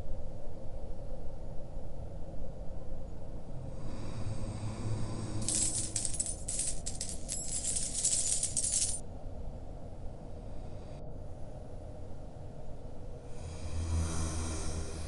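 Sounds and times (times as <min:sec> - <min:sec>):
coins jingling: 0:05.4 - 0:09.0.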